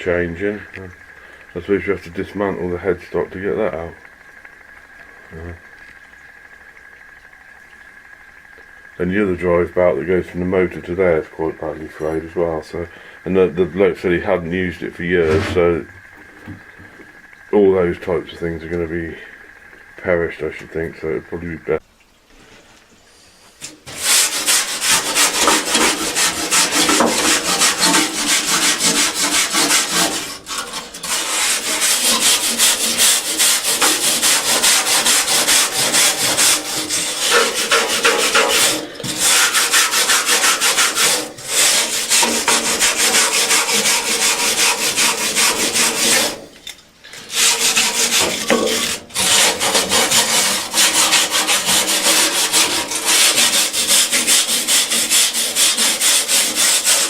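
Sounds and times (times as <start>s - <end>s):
sanding a surface: 23.9s - 46.4s, 47.3s - 57.0s.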